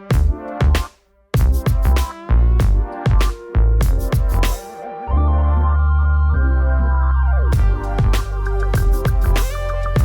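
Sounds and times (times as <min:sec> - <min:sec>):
electronic music beats: 0:00.0 - 0:10.0
organ-like synth chords: 0:00.0 - 0:10.0
deep bass note: 0:05.2 - 0:10.0.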